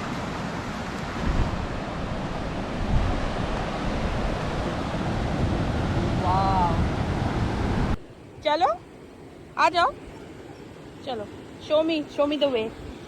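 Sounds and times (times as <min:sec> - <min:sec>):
sea surf breaking on beach: 0:00.0 - 0:08.0
wind buffeting microphone: 0:00.0 - 0:08.0.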